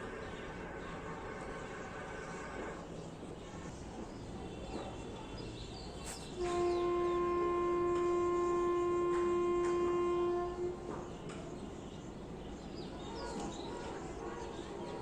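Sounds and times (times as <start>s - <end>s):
steady horn blast: 6.3s - 11.4s.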